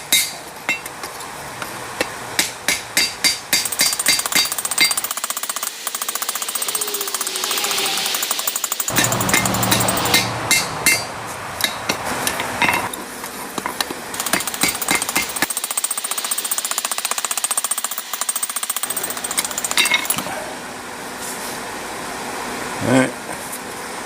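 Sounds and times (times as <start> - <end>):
hammer striking metal on anvil: 0.0 - 0.9, 2.0 - 5.0, 8.3 - 13.0, 19.1 - 20.3
fast even pulsing: 3.7 - 10.5.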